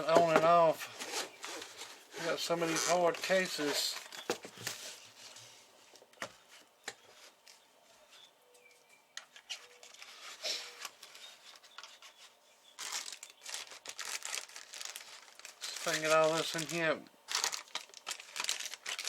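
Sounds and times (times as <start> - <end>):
rustling: 9.4 - 19.0.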